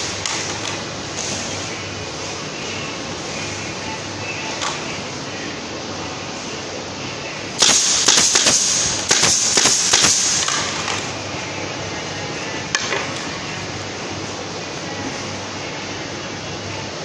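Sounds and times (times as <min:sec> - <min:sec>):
pneumatic nail gun firing: 0:07.6 - 0:11.1.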